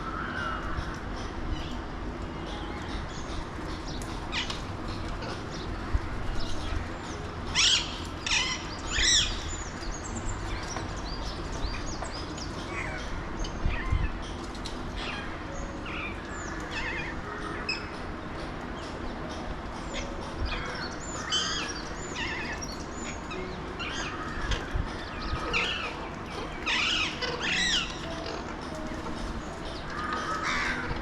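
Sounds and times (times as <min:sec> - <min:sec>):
parakeets chirps and squawks: 0:07.5 - 0:09.4, 0:15.0 - 0:18.0, 0:19.8 - 0:31.0
parakeets harsh calls: 0:07.6 - 0:09.4, 0:23.8 - 0:28.5, 0:29.8 - 0:31.0.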